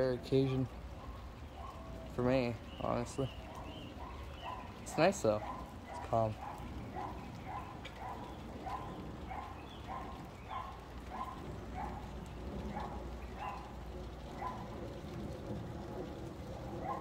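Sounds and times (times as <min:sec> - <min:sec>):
rain pattering: 0:00.0 - 0:17.0
dog barking: 0:01.0 - 0:02.0, 0:03.5 - 0:14.8, 0:16.7 - 0:17.0.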